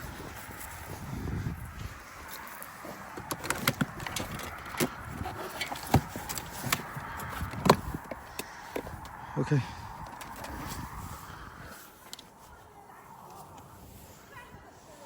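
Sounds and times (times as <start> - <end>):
strong wind hiss: 0.0 - 2.4, 4.0 - 12.4
handling thumps: 2.9 - 9.1
sharp clicks and knocks: 3.1 - 9.2.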